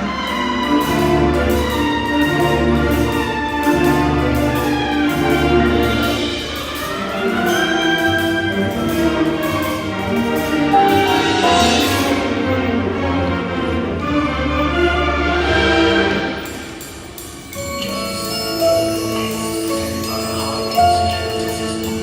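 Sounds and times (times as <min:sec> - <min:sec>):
marching band playing: 0:00.0 - 0:17.1.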